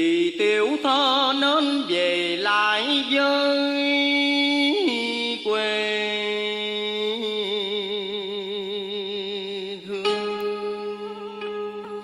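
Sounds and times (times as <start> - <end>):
person singing long note: 9.9 - 12.0.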